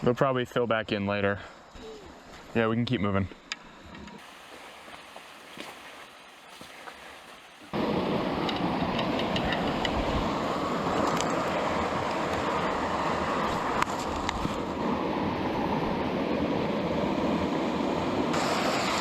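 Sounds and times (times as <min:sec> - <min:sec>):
river water rushing over rocks: 0:04.2 - 0:07.9.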